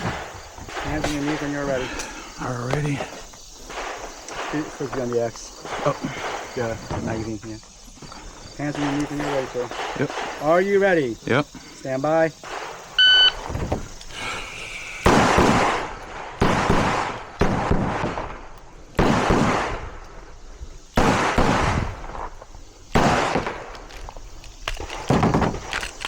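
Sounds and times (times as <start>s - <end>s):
pistol shots with echo: 15.0s - 20.0s, 21.0s - 22.2s, 22.9s - 23.8s.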